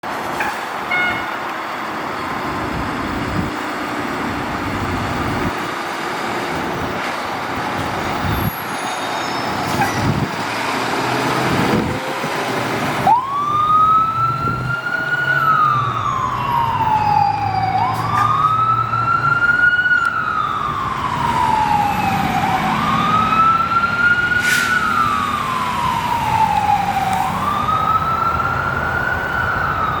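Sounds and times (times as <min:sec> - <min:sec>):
road and engine noise: 0:00.0 - 0:30.0
fire engine siren wailing: 0:00.4 - 0:30.0.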